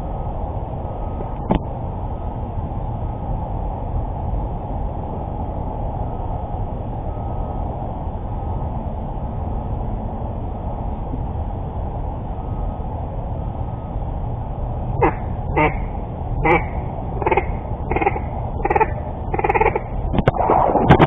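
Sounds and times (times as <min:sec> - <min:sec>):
boat motor rumbling: 0:14.4 - 0:21.0.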